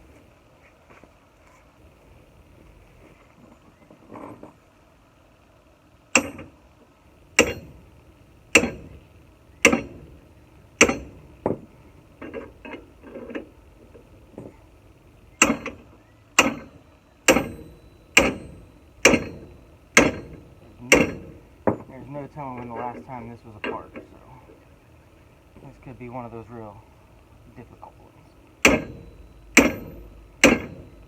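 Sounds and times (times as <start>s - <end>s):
hammer striking metal: 6.2s - 6.5s, 7.4s - 7.8s, 8.5s - 9.0s, 9.6s - 10.2s, 10.8s - 11.6s, 15.4s - 15.8s, 16.4s - 21.9s, 28.6s - 31.0s.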